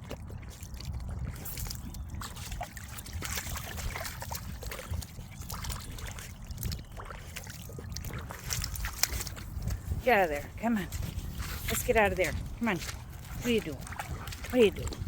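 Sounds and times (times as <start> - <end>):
water trickling: 0.0 - 10.3
dog splashing in muddy water: 0.0 - 15.0
wind on microphone: 0.0 - 15.0.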